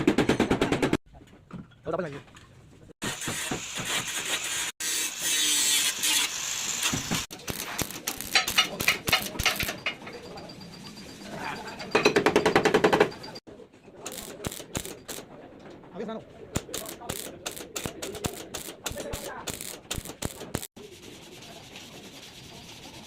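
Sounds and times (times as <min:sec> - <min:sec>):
bodywork tools rattling and knocking: 0:00.0 - 0:02.5, 0:07.0 - 0:10.3, 0:11.7 - 0:13.4.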